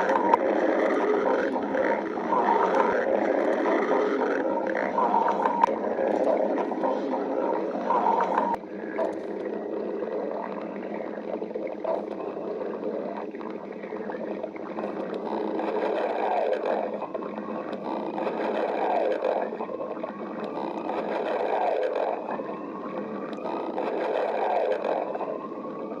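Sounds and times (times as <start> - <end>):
stomach growling: 0.0 - 26.0
thin rising whine: 0.0 - 26.0.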